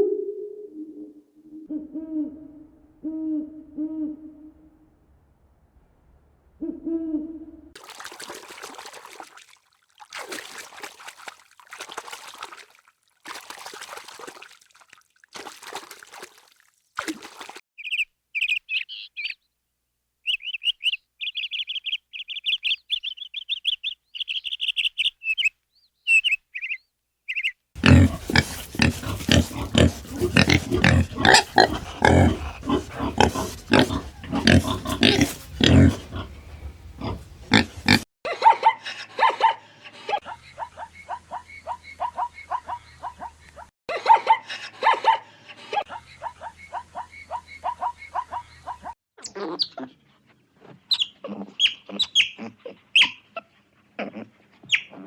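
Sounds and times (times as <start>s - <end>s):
low grunting calls: 27.8s - 38.0s
short breathy animal bursts: 27.8s - 38.0s.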